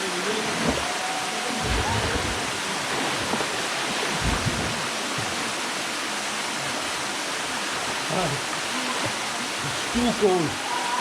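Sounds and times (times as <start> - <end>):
waterfall roaring: 0.0 - 11.0
low bumps: 1.6 - 5.4.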